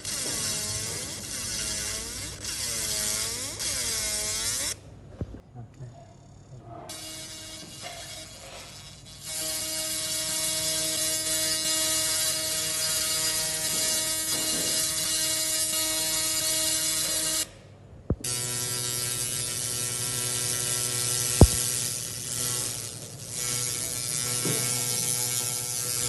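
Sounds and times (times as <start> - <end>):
laser cleaning machine hissing: 18.2 - 26.0.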